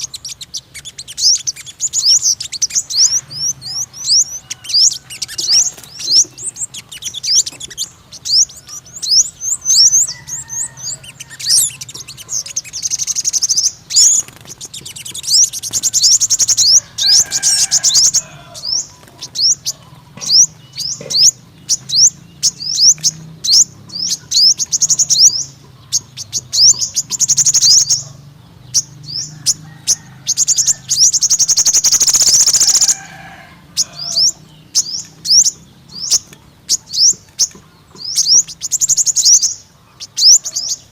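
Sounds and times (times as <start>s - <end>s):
high thin bird chirps: 0.0s - 28.1s, 28.7s - 33.1s.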